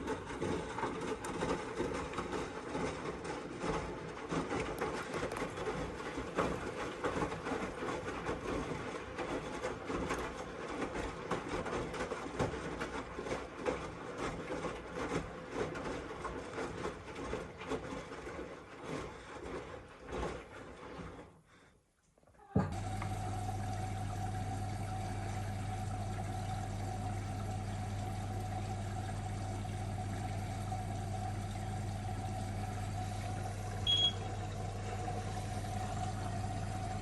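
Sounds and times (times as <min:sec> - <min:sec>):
washing machine running: 0:00.0 - 0:21.3, 0:22.4 - 0:37.0.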